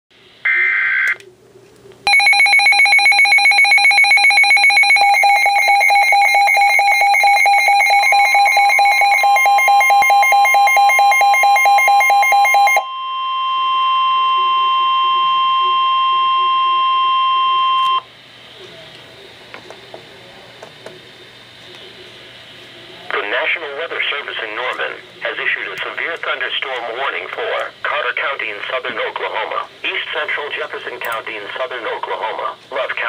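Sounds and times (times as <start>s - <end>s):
pulsing electronic alarm tones: 2.1s - 18.1s
steady alarm tone: 2.1s - 18.1s.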